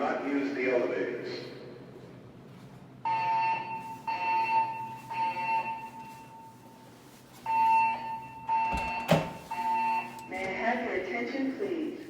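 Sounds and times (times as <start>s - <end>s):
fire alarm beeps: 3.0s - 6.8s, 7.4s - 10.9s.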